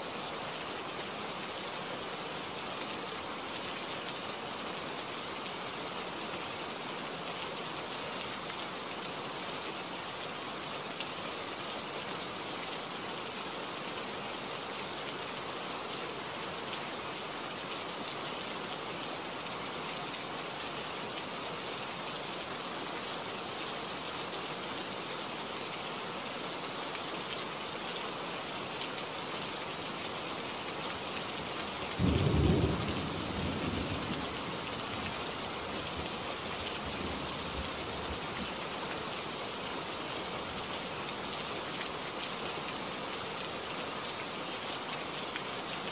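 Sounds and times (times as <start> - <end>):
steady rain falling: 0.0 - 45.9.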